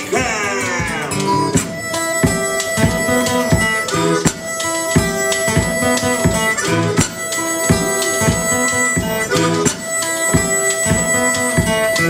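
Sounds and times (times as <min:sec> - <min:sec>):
blues band playing: 0:00.0 - 0:12.0
harmonica notes: 0:00.0 - 0:12.0.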